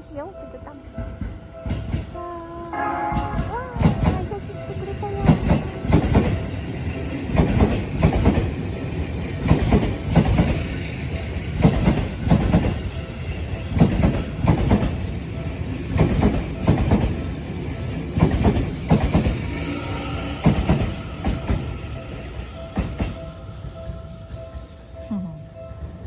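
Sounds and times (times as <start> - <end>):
train rumble: 0.0 - 26.0
train wheels clicking over rail joints: 3.1 - 15.2, 15.9 - 23.2.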